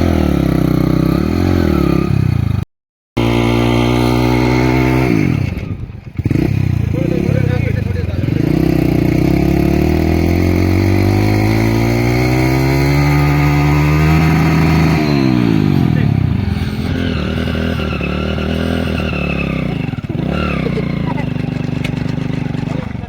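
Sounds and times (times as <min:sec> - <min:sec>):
motorcycle engine revving: 0:00.0 - 0:23.0.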